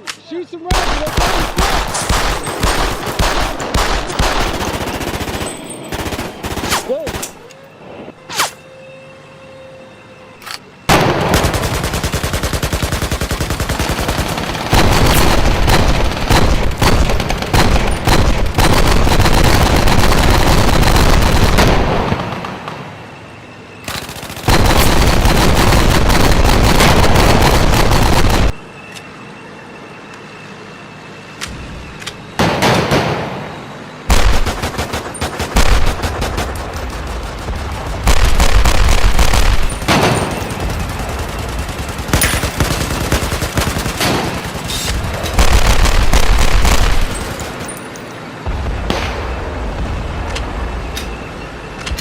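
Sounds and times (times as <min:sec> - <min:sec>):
single gunshots: 0:00.7 - 0:04.6
automatic gunfire bursts: 0:00.7 - 0:07.2, 0:11.2 - 0:21.7, 0:34.1 - 0:47.6.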